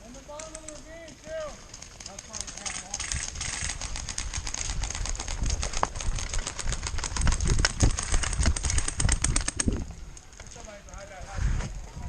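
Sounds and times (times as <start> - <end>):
wind buffeting microphone: 3.0 - 12.0.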